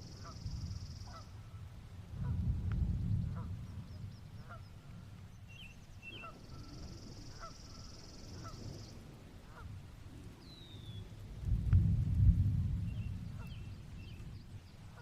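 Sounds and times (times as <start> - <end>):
low rumble: 2.1 - 5.1, 11.2 - 14.7.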